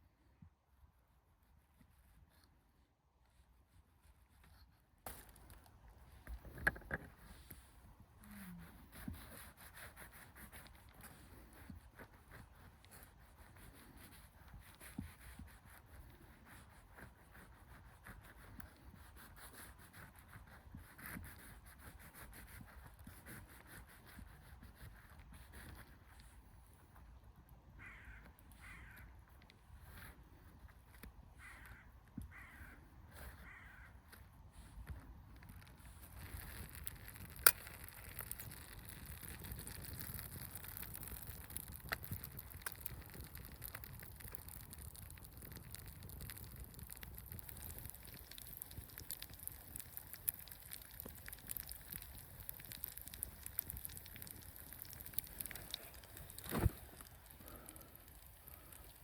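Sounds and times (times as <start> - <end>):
distant bird cawing: 27.8 - 29.1, 31.4 - 32.8, 33.4 - 34.0
campfire crackling: 33.4 - 59.0.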